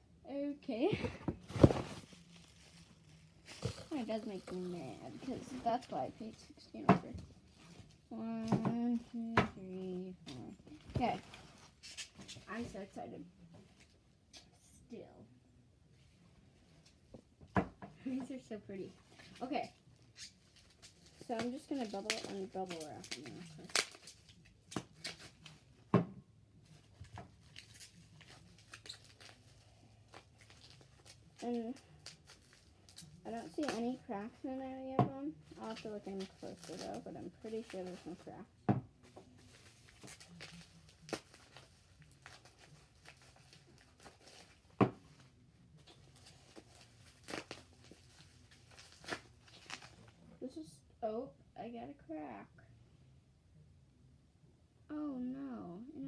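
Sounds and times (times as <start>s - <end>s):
bubble wrap crinkling: 1.0s - 6.6s, 19.0s - 25.7s, 26.7s - 38.5s, 39.1s - 50.2s.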